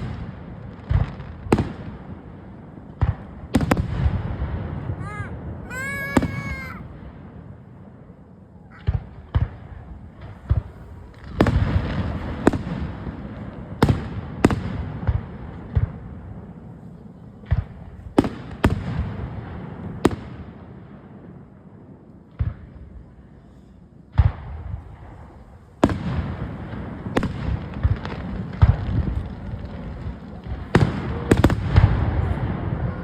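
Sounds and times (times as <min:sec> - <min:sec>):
fireworks bangs: 0:03.0 - 0:07.3, 0:25.8 - 0:33.0
fireworks crackle: 0:27.0 - 0:33.0.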